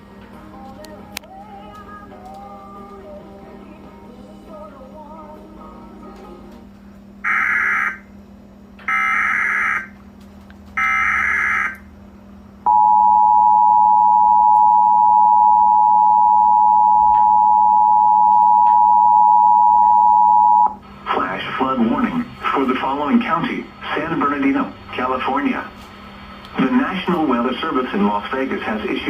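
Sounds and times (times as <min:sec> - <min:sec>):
screeching digital data tones: 0:07.3 - 0:08.1, 0:08.9 - 0:09.9, 0:10.8 - 0:11.8.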